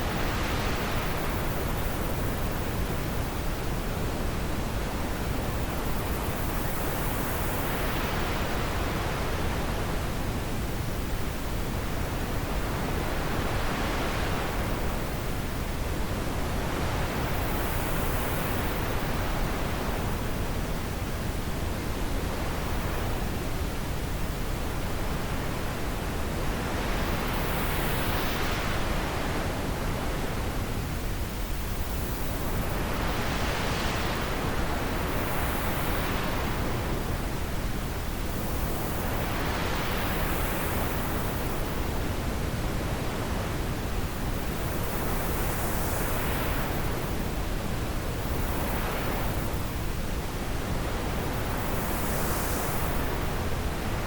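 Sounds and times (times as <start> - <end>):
gusting wind: 0.0 - 54.0.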